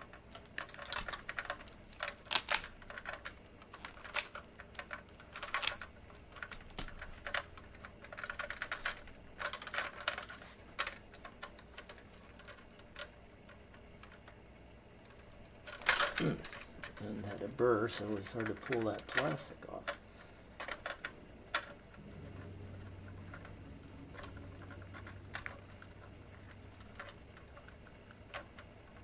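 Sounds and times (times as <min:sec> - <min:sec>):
wire stripper clicks and snaps: 0:00.4 - 0:07.5.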